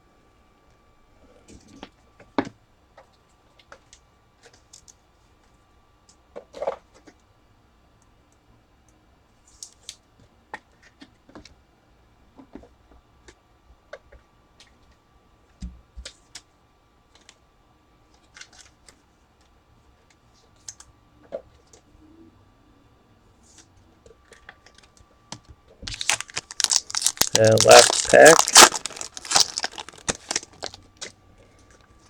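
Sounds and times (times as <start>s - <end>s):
trading cards clicking and crinkling: 25.9s - 30.8s.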